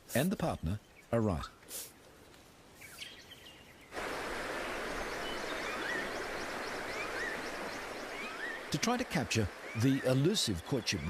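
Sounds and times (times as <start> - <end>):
flowing stream water: 3.9 - 11.0
faint bird chirps: 4.6 - 11.0.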